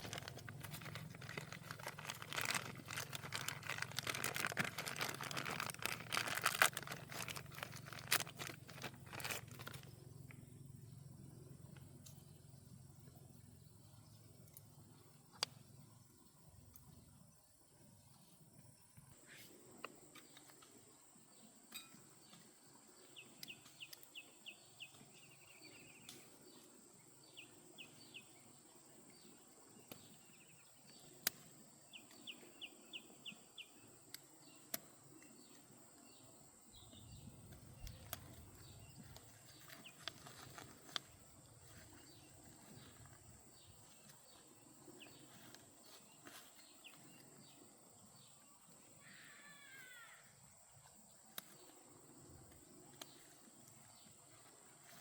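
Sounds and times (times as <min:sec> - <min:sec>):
faint birds chirping: 0:00.0 - 0:55.0.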